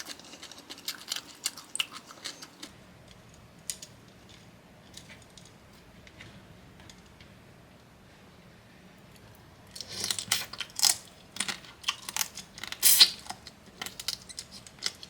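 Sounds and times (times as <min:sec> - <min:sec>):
crunchy chewing: 0:00.0 - 0:02.8.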